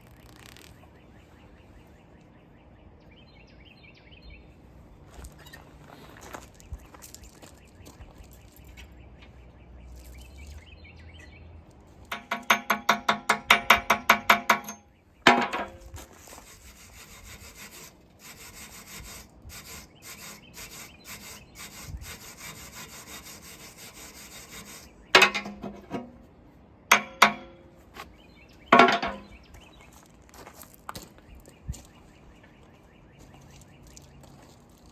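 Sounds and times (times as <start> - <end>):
sharp knocks: 12.1 - 15.8, 26.9 - 27.7, 28.7 - 29.3
scraping on metal: 12.1 - 26.2, 28.7 - 29.4
hissing scrape: 16.1 - 25.0
sharp hit on metal: 26.9 - 27.8, 28.7 - 29.3.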